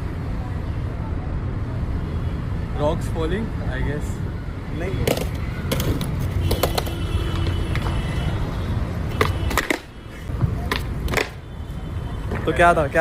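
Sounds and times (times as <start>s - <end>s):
skateboard clacks: 5.0s - 8.0s, 9.1s - 9.9s, 10.5s - 11.4s
skateboard wheels rumbling on pavement: 5.0s - 8.4s
skateboard tail pops: 5.1s - 8.0s, 9.2s - 9.9s, 10.6s - 11.4s.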